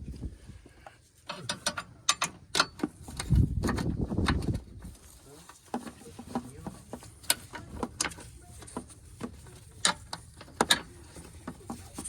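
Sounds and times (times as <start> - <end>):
hand tools clicking and knocking: 1.2 - 4.8, 5.5 - 12.0.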